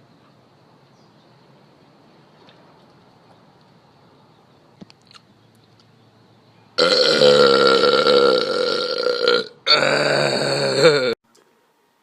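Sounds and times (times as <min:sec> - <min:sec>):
loud long belch: 0:06.8 - 0:11.2.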